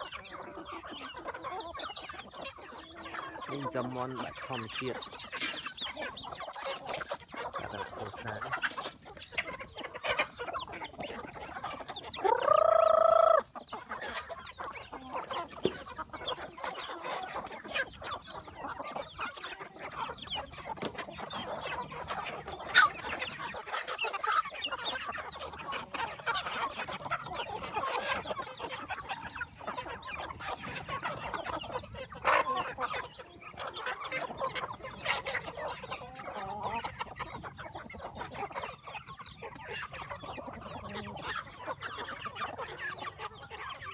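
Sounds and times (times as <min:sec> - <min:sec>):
chickens clucking: 0:00.0 - 0:43.9
rooster crowing: 0:12.2 - 0:13.4.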